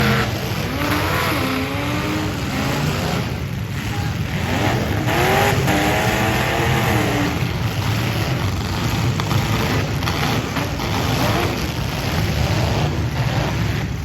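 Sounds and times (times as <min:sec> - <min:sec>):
car engines revving: 0:00.0 - 0:14.0.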